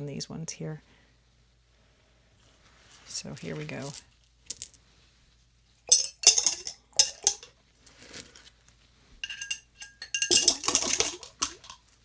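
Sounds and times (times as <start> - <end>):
metal screws clinking into container: 5.9 - 7.5, 9.2 - 11.8.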